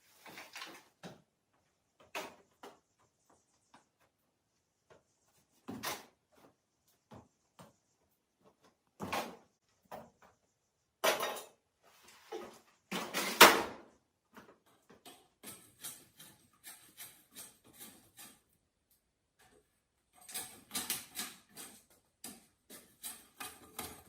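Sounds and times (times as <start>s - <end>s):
objects knocking and clattering: 11.0s - 11.6s, 19.4s - 24.0s.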